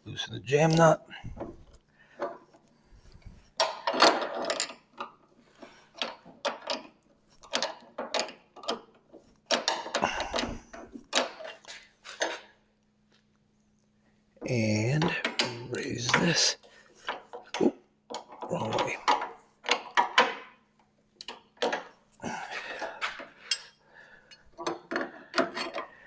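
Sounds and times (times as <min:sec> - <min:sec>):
wrench clinking on metal: 0:23.4 - 0:25.9.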